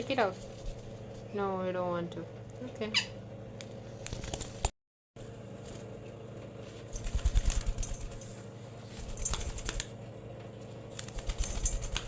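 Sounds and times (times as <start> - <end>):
parakeet wing flutters: 4.0 - 4.7, 6.8 - 10.0, 10.9 - 12.0.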